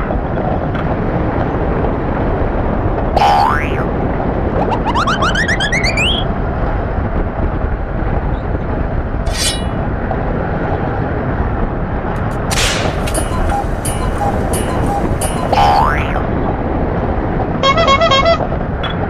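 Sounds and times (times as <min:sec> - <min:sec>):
roller coaster rumble: 0:00.0 - 0:19.0
cartoon sound effect: 0:03.2 - 0:03.9, 0:04.6 - 0:06.3, 0:13.1 - 0:16.3
wind on microphone: 0:06.2 - 0:17.8.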